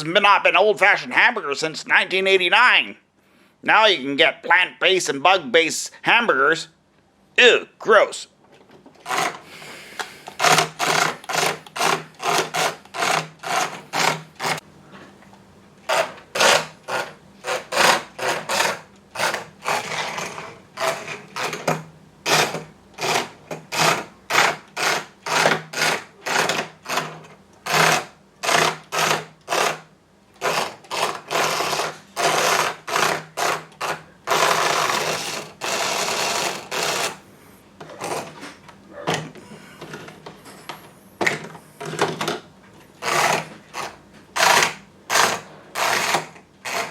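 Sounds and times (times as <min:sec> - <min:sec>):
toy car electric motor whirring: 0:09.0 - 0:14.6, 0:15.9 - 0:21.7, 0:22.3 - 0:29.8, 0:30.4 - 0:37.2, 0:43.0 - 0:46.9.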